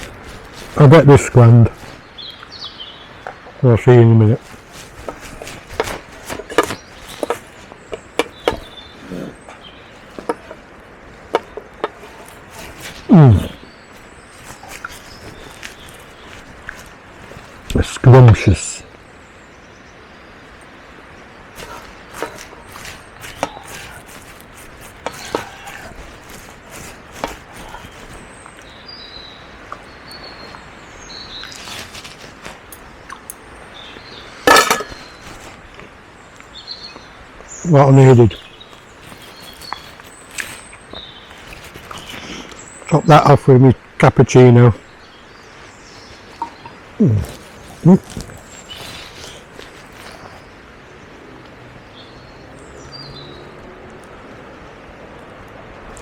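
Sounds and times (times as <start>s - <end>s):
person humming: 13.1s - 13.6s, 47.0s - 48.1s
cutlery scraping on plate: 34.5s - 35.0s.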